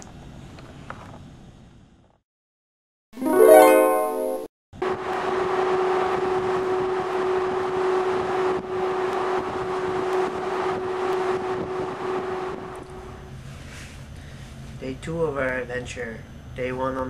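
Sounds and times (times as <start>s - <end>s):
music: 3.2s - 4.5s.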